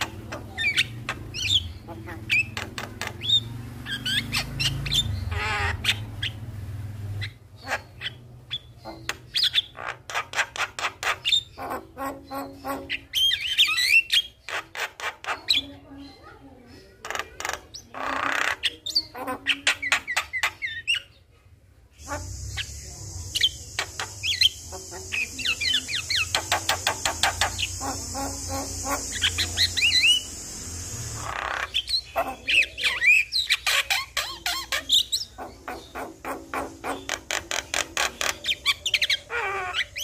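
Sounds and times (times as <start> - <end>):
bird singing with clicks and whistles: 8.0 - 15.8, 22.0 - 40.0
steady high hiss: 22.0 - 31.5.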